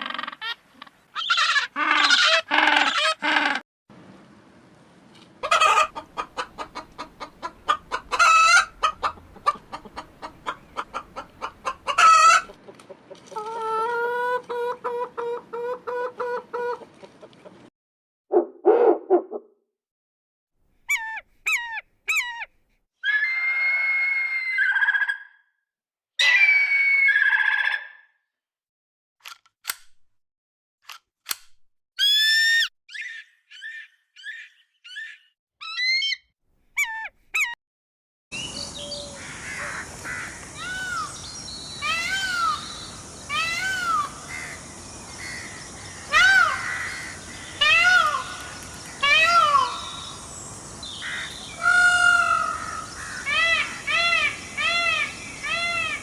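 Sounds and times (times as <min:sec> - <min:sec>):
rising and falling animal calls: 0:18.3 - 0:19.5, 0:22.2 - 0:25.4, 0:26.2 - 0:28.0.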